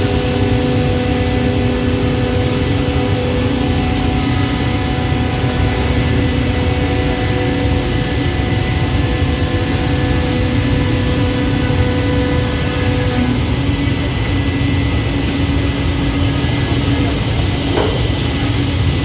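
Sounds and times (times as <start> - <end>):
scroll saw running: 0.0 - 14.1.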